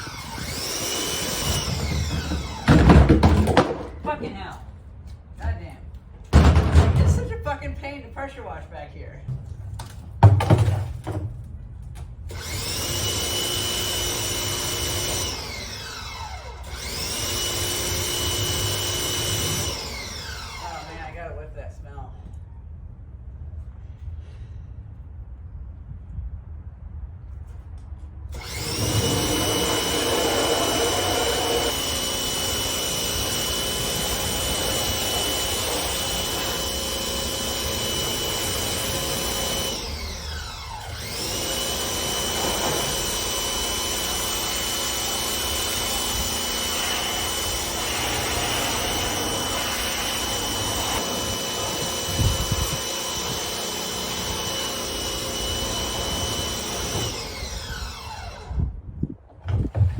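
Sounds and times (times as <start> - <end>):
pressure washer motor whine: 0.0 - 3.6, 12.3 - 21.1, 28.3 - 58.6.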